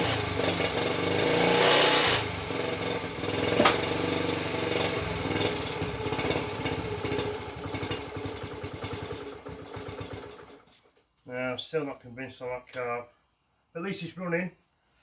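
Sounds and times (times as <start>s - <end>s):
small motorcycle engine running: 0.0s - 10.7s.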